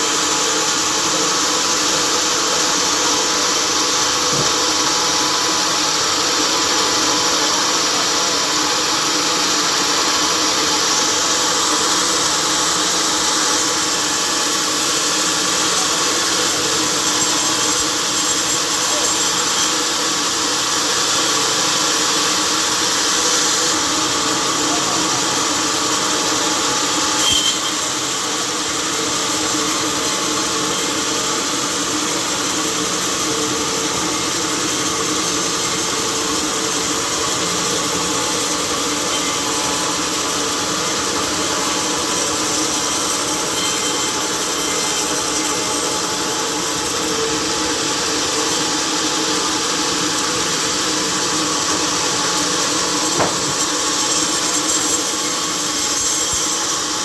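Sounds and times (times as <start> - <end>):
sawmill machinery running: 0.0 - 57.0
machinery knock: 53.2 - 53.6.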